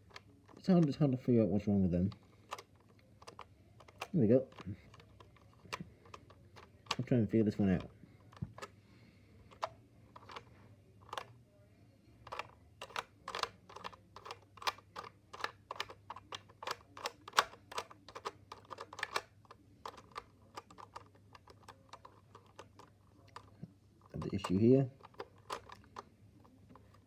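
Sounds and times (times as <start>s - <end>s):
plastic puzzle tiles clicking: 2.2s - 7.0s, 9.5s - 11.3s, 12.2s - 26.0s.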